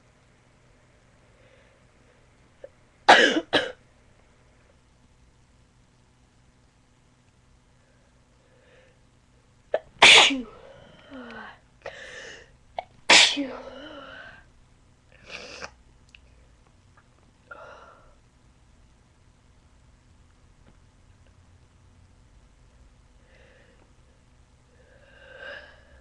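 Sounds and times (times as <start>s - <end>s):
person sneezing loudly: 9.8s - 10.6s, 13.1s - 13.7s.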